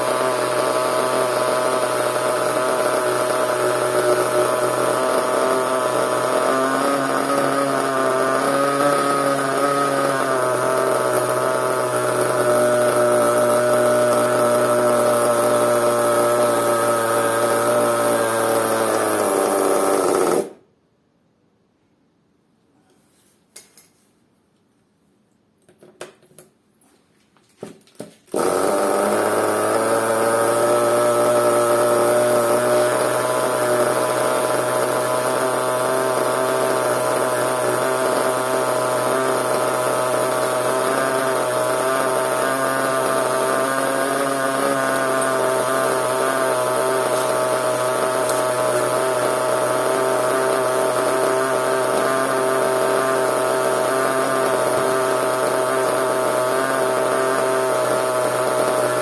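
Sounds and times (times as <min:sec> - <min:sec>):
small engine starting and idling: 0:00.0 - 0:20.6, 0:28.0 - 0:59.0.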